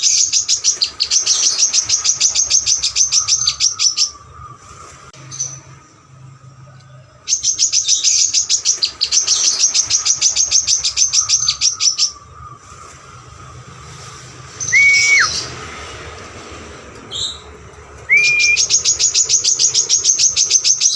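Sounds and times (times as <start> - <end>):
bird trilling: 7.3 - 13.6, 14.6 - 15.6, 18.1 - 20.9
bird whistled note: 14.5 - 15.6, 18.1 - 20.2.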